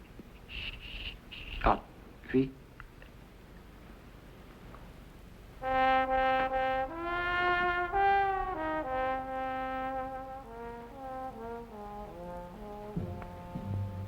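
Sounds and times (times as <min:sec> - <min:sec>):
dramatic brass chords: 0:05.6 - 0:14.0.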